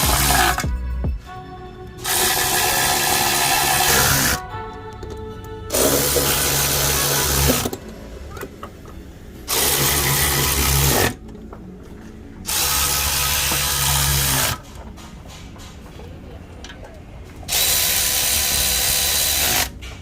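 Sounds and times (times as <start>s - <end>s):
power tool running: 0.0s - 0.6s, 2.0s - 4.4s, 5.7s - 7.8s, 9.5s - 11.2s, 12.4s - 14.6s, 17.5s - 19.7s.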